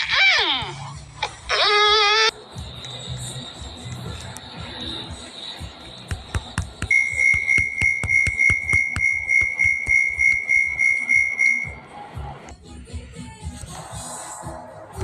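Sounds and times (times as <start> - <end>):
door warning beeper: 6.9 - 11.8.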